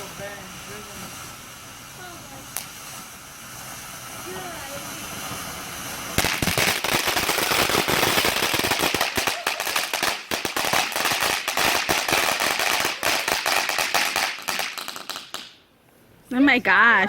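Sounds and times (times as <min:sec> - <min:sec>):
firework cracks and bangs: 0:00.0 - 0:15.6.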